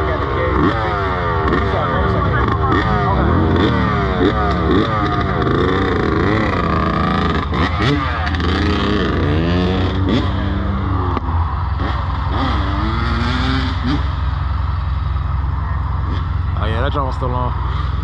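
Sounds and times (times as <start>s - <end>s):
dirt bike engine revving: 0.0s - 18.0s.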